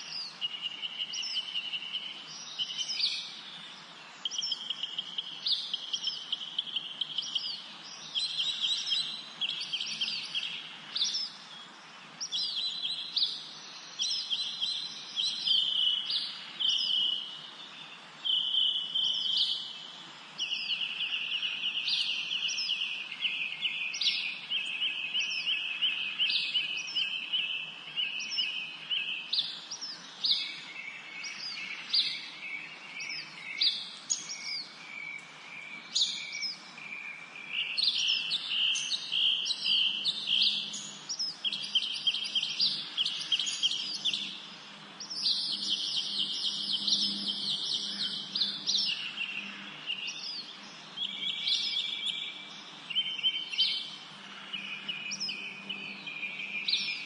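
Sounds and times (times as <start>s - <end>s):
songbirds chirping and trilling: 0.0s - 57.0s.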